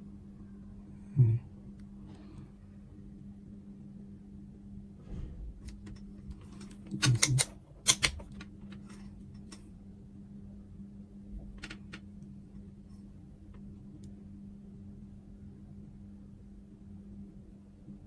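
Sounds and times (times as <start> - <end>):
steady low hum: 0.0 - 18.0.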